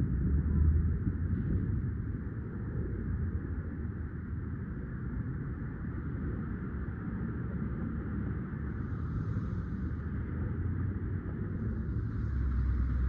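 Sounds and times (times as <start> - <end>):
vehicle engine idling: 11.4 - 13.0.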